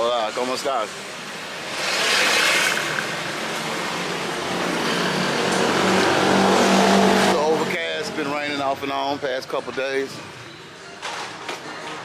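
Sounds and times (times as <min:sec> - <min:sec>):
vehicle rushing past: 0:00.9 - 0:08.2.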